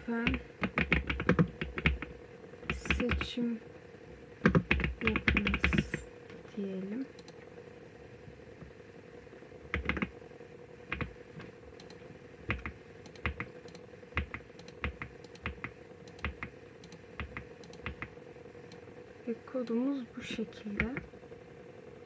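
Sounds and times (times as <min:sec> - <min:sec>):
computer keyboard typing: 0:00.0 - 0:03.3, 0:04.4 - 0:06.1, 0:07.1 - 0:07.5, 0:09.7 - 0:10.2, 0:10.9 - 0:18.9, 0:19.6 - 0:21.1
faint steady hum: 0:00.0 - 0:22.0.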